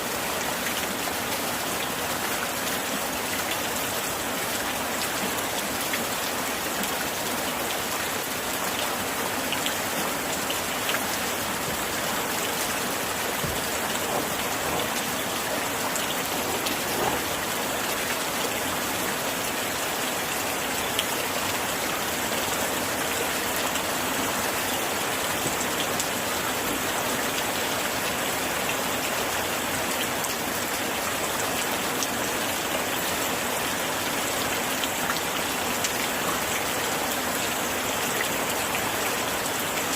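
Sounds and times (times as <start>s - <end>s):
rain on window glass: 9.5s - 19.8s, 20.8s - 33.1s.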